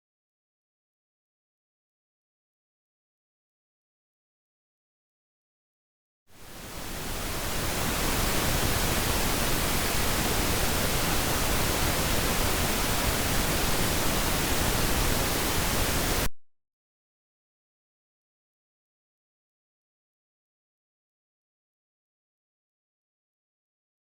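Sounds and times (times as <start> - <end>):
steady even hiss: 6.4 - 16.3.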